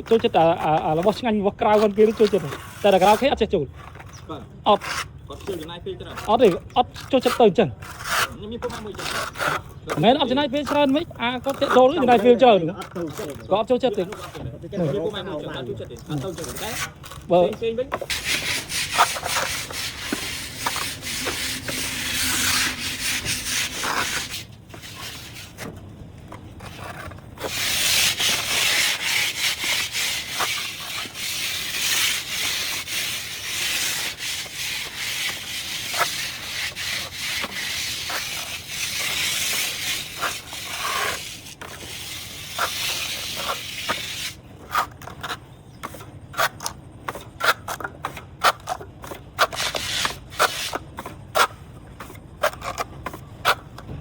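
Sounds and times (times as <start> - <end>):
tool scraping on concrete: 0.0 - 54.0.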